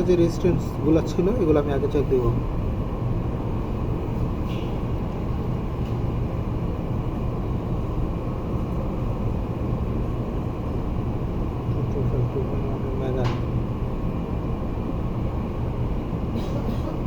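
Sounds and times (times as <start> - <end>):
low hum and rumble: 0.0 - 17.0.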